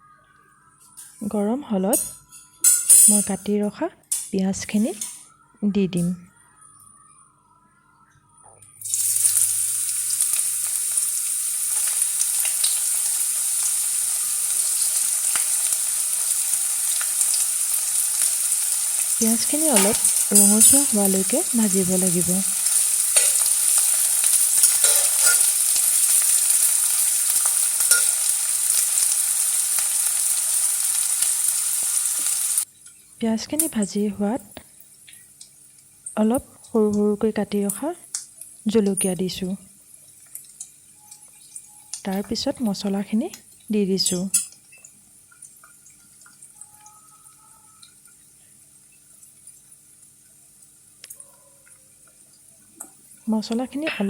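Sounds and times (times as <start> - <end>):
onions sizzling in oil: 8.8 - 34.0.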